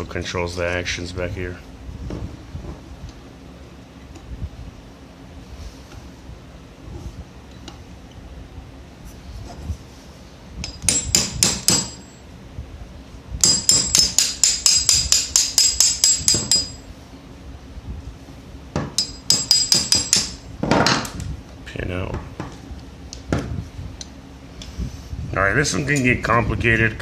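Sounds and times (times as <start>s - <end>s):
hammer tapping metal punch: 10.6s - 12.2s, 13.4s - 16.8s, 18.8s - 21.0s.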